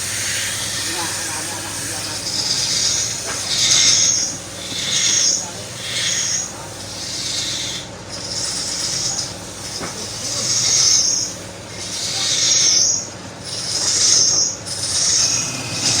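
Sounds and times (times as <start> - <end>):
chisel scraping spinning wood: 0.0 - 16.0
lathe motor hum: 0.0 - 16.0.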